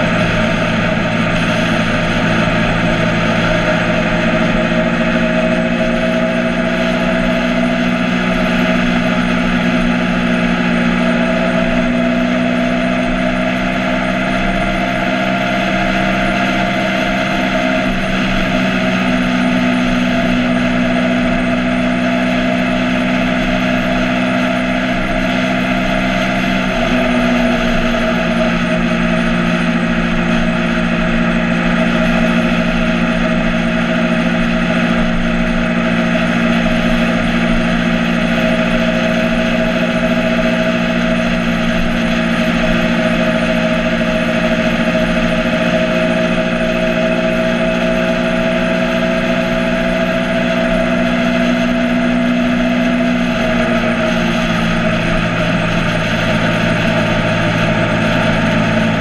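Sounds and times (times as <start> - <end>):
motorcycle engine running: 0.0 - 59.0
rushing noise: 0.0 - 59.0.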